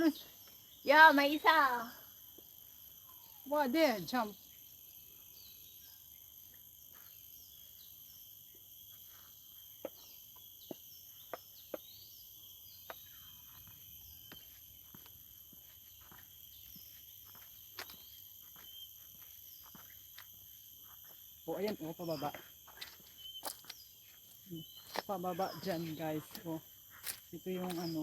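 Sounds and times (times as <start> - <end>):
insect chorus: 0.0 - 28.0
bird chirps: 20.9 - 28.0.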